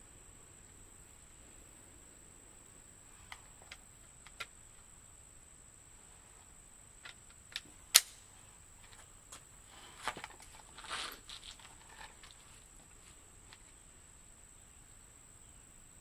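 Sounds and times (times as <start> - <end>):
crickets chirring: 0.0 - 16.0
sharp clicks: 3.3 - 4.5, 7.0 - 8.2
handling rustle: 8.7 - 13.8.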